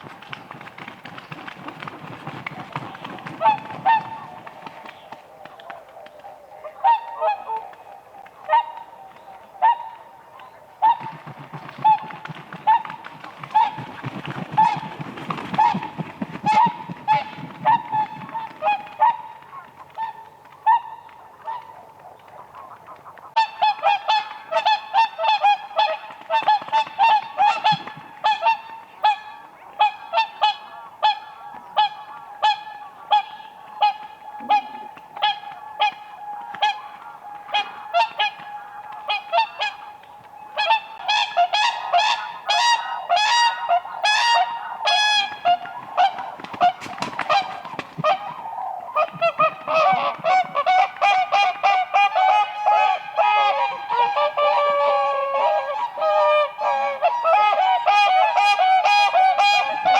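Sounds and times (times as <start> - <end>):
swans bugling honks: 16.5 - 59.9.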